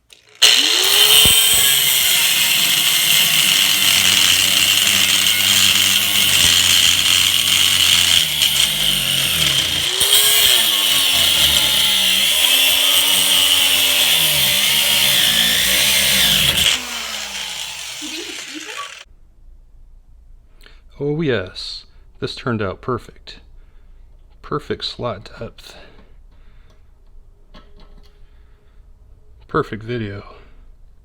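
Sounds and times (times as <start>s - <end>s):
angle grinder cutting metal: 0.1s - 19.1s.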